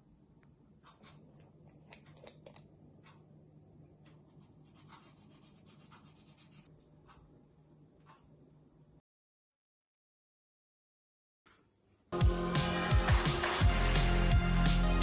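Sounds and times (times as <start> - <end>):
faint scratching and clicks: 0.4 - 8.6.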